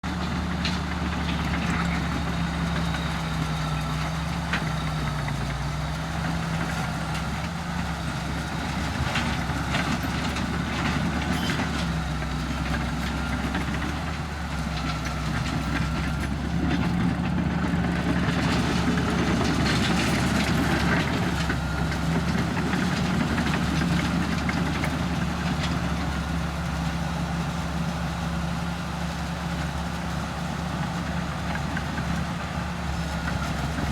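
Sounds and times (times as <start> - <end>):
bulldozer diesel engine running: 0.0 - 33.9.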